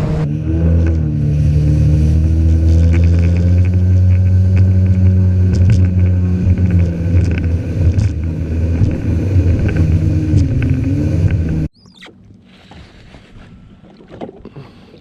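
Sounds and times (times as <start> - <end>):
jet ski engine drone: 0.0 - 13.9
water and wind noise: 0.0 - 15.0.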